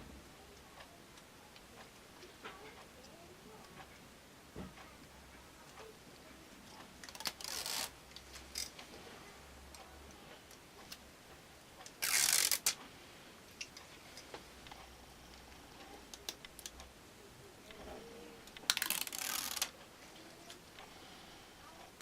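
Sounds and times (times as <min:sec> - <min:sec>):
small parts clicking and tapping: 0:13.6 - 0:16.9, 0:17.6 - 0:19.8.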